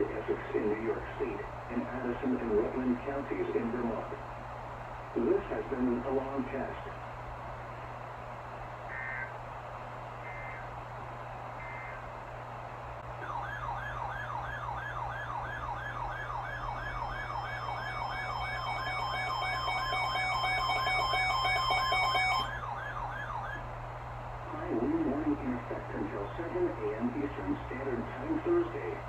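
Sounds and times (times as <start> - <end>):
rising siren-like alarm tone: 13.2 - 23.7
steady alert tones: 17.2 - 22.5
digital data bursts: 17.4 - 22.5.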